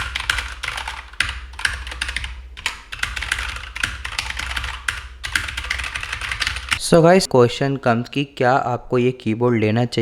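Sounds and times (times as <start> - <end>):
fast typing on mechanical keyboard: 0.0 - 6.8.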